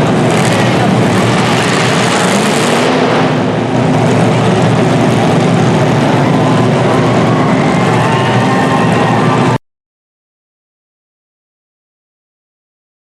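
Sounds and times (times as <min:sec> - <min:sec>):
car engines running loudly: 0:00.0 - 0:09.6.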